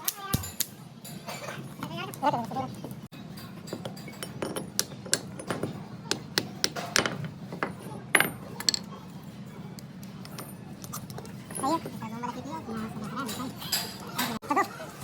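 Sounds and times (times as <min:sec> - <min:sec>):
metal tools clinking: 0:03.2 - 0:05.7, 0:12.8 - 0:14.4.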